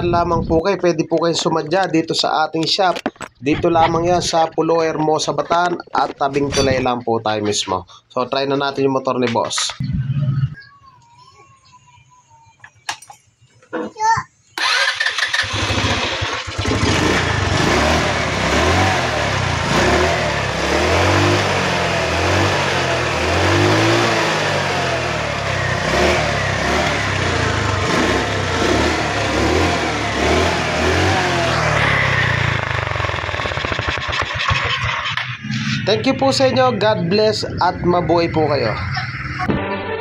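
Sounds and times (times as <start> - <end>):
motorcycle engine revving: 14.6 - 40.0.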